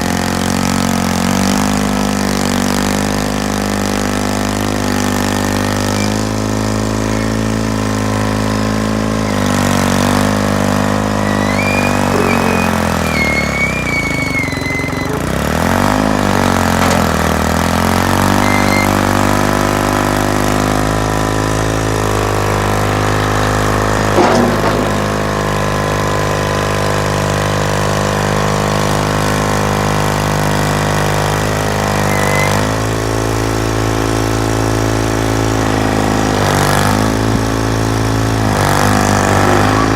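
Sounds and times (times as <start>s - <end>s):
crawler diesel engine running: 0.0s - 39.9s
high wavering squeal: 5.8s - 19.4s, 32.0s - 32.8s.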